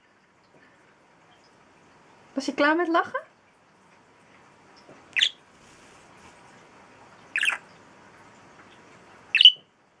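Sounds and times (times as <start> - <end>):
budgerigar shrieking: 7.4 - 7.6, 9.4 - 9.6.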